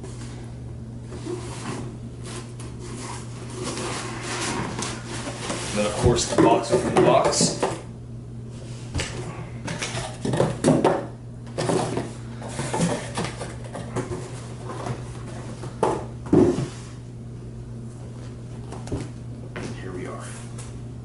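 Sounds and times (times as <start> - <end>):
steady low hum: 0.0 - 21.0
cardboard rustling and scraping: 1.1 - 7.6.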